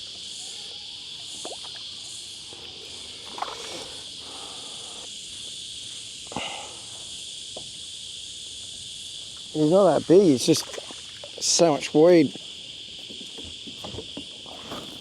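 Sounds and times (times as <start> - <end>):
cicadas chorusing: 0.0 - 15.0.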